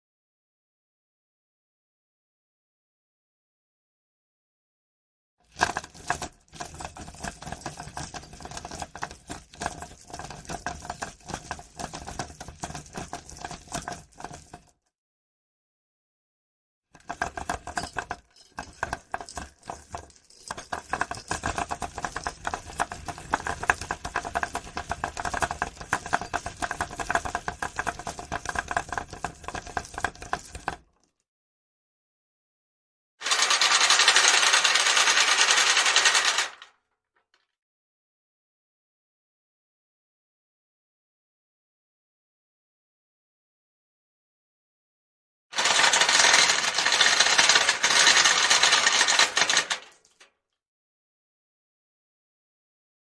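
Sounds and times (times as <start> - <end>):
metal chain rattling: 5.5 - 14.7, 17.0 - 30.9, 33.2 - 36.6, 45.6 - 50.3.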